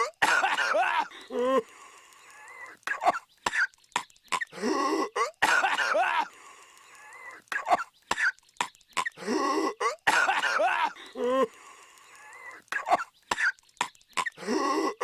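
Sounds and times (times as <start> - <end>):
cartoon character coughing: 0.0 - 1.1, 2.9 - 3.7, 4.3 - 6.3, 7.6 - 8.4, 9.0 - 11.0, 12.8 - 13.6.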